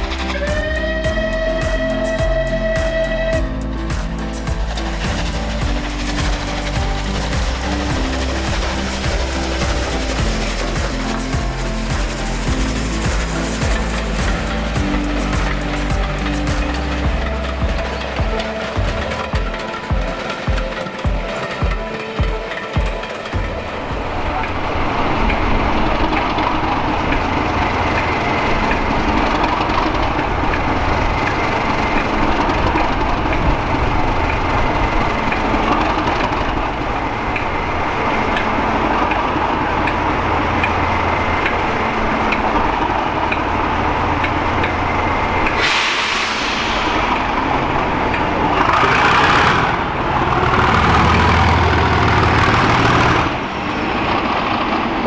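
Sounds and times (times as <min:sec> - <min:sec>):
rushing hiss bursts: 0:45.5 - 0:53.4
diesel locomotive engine running: 0:45.5 - 0:54.4.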